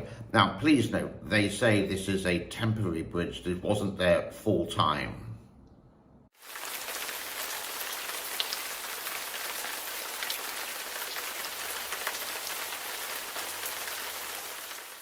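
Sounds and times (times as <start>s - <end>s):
heavy rain: 6.4s - 15.0s.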